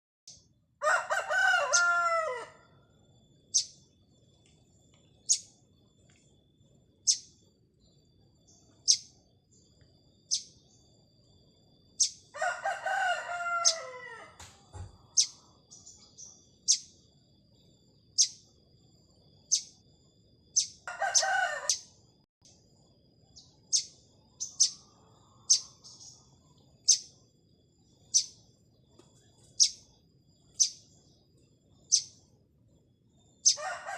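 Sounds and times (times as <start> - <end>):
small bird chirping: 0.3 - 0.6, 3.1 - 12.4, 13.2 - 14.0, 14.6 - 33.8
rooster crowing: 0.8 - 2.8, 12.3 - 15.3, 20.8 - 21.9, 33.4 - 33.9.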